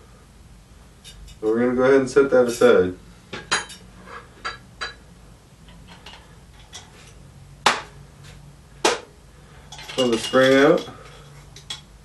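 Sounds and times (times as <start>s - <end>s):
metal fork parts clinking: 9.7s - 11.9s.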